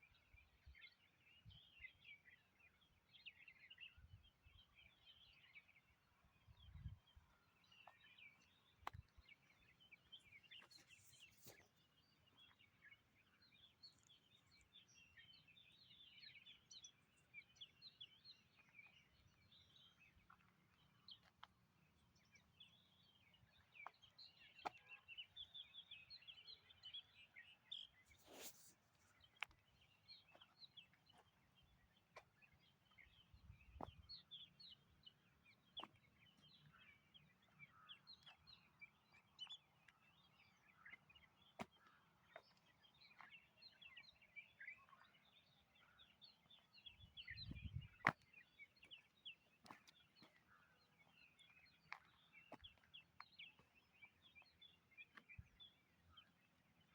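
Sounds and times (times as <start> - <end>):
small birds chirping: 0.0 - 56.9
rustle: 28.1 - 29.1.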